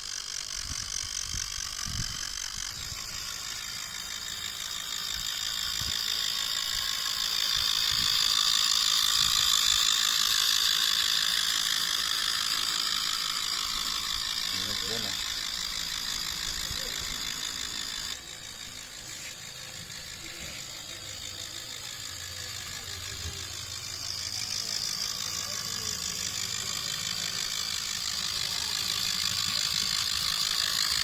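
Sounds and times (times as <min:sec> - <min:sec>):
electric motor whining: 0:00.0 - 0:31.0.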